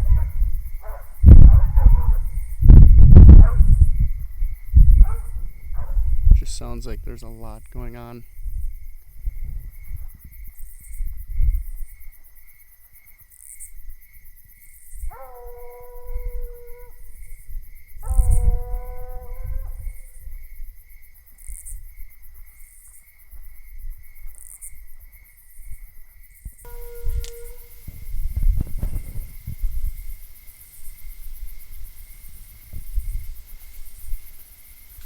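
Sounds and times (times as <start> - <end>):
dog baying howls: 0.0 - 2.3, 15.1 - 17.0, 18.0 - 20.0, 26.7 - 28.3
insects chirping: 0.0 - 35.0.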